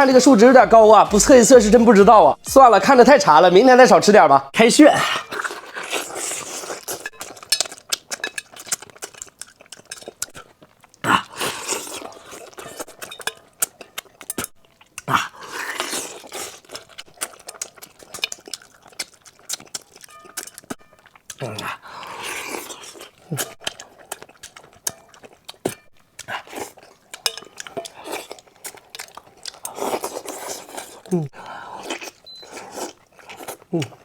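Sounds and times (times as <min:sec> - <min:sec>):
mouth sounds of eating: 0:04.7 - 0:34.0
utensils clinking against dishes: 0:27.2 - 0:28.3.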